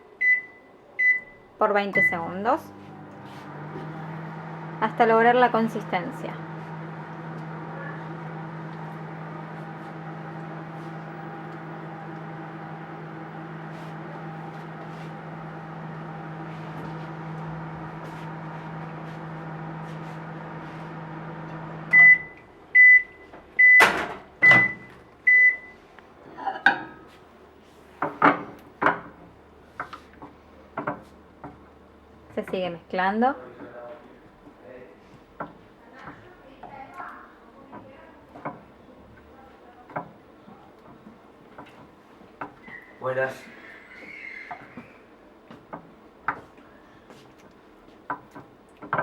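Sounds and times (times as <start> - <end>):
microwave oven humming: 0.1 - 34.8
microwave beeps: 0.2 - 2.5, 21.8 - 25.8.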